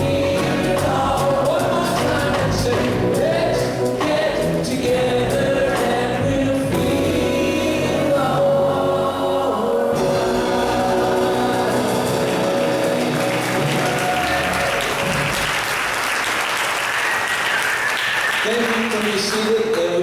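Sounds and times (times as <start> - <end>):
choir singing gospel song: 0.0 - 15.8
instrumental accompaniment: 0.0 - 15.8.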